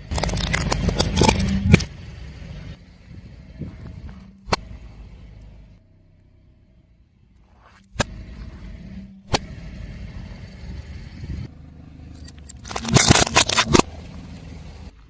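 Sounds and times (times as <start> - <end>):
tyre crushing brittle objects: 0.0 - 1.9, 12.3 - 14.0
low car rumble: 0.0 - 15.0.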